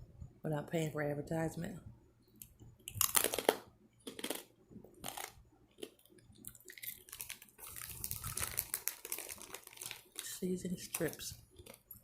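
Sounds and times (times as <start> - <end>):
chewing crunchy pork skin: 2.9 - 10.3.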